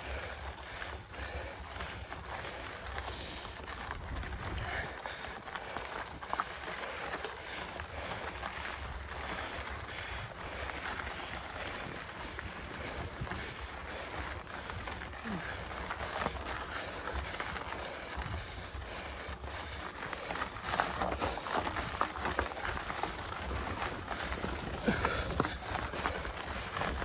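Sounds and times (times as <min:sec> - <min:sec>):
bike tyre noise on dirt: 0:00.0 - 0:27.0
hard rhythmic breathing: 0:00.0 - 0:27.0
wind rumbling on microphone: 0:03.0 - 0:05.0.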